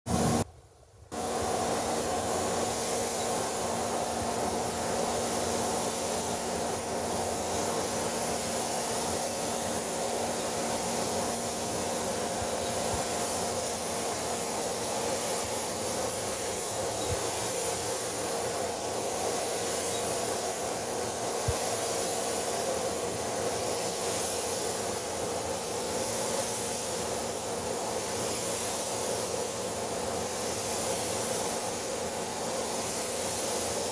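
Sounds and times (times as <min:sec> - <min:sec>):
paint spray gun hissing: 0:00.1 - 0:00.4, 0:01.1 - 0:33.9
steady hum: 0:00.1 - 0:25.9.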